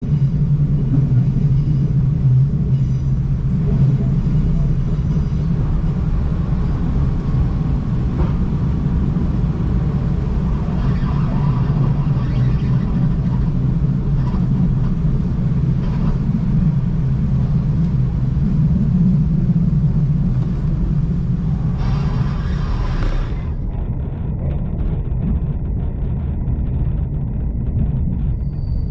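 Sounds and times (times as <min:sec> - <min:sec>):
train rumbling: 0:00.0 - 0:28.9.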